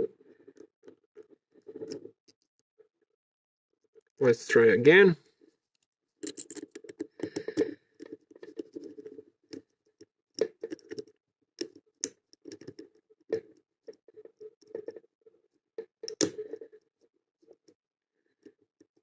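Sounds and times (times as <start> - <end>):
lock pick scraping and clicking: 6.2 - 7.7.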